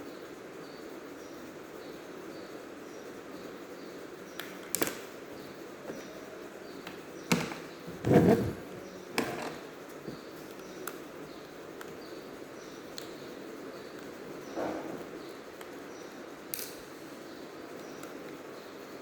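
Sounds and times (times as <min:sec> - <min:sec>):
clicks and knocks of laptop parts: 0:06.9 - 0:07.7, 0:09.2 - 0:10.6.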